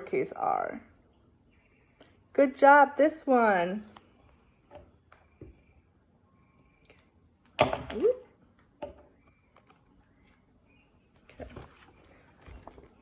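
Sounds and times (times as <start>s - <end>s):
woman speaking: 0.0s - 0.9s, 2.3s - 3.9s.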